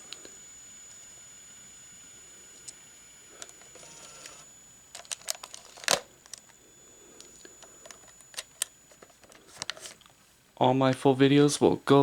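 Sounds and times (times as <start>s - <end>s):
faint high-pitched whine: 0.0s - 12.0s
camcorder handling clicks and taps: 3.4s - 6.5s.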